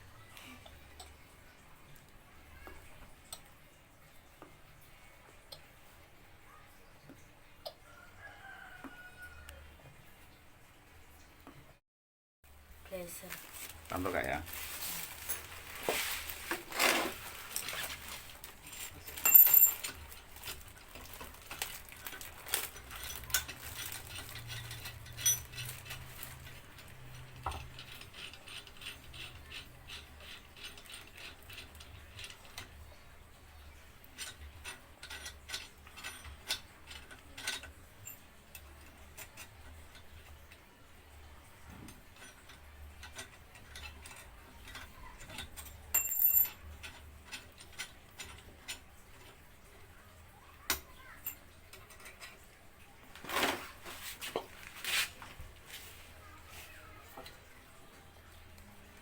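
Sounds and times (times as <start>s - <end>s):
metal tools clinking on metal: 13.4s - 32.8s, 34.1s - 40.7s, 41.7s - 49.5s, 50.6s - 57.5s.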